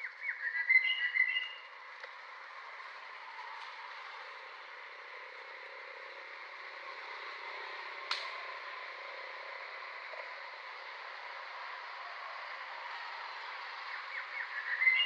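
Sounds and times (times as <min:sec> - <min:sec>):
outdoor background noise: 0:00.0 - 0:15.0
sharp click: 0:08.1 - 0:08.4.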